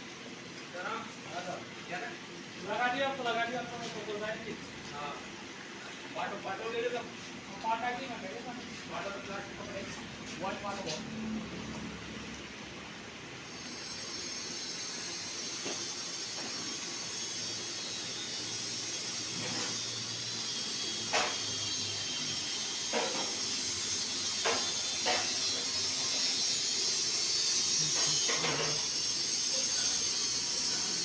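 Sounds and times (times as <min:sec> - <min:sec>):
steam hissing: 0:13.5 - 0:31.0.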